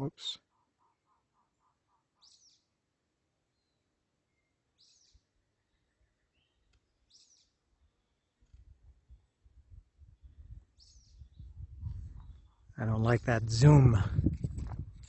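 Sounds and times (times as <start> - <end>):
faint bird chirping: 0.0 - 12.8.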